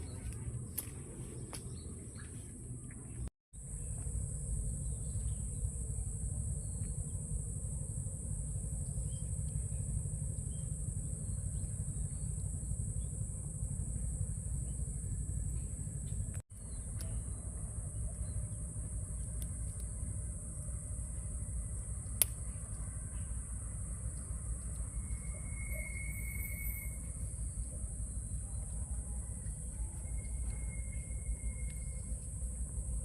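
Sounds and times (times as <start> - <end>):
high-pitched insect chorus: 3.6 - 33.0
faint bird chirps: 8.8 - 13.3, 22.4 - 32.3.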